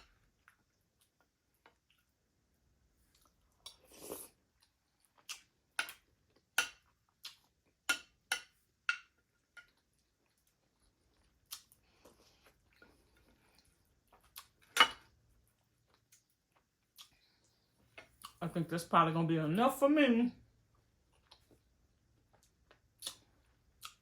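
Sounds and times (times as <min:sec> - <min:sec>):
wet mouth smacks while chewing: 0:16.1 - 0:17.3, 0:22.4 - 0:24.0.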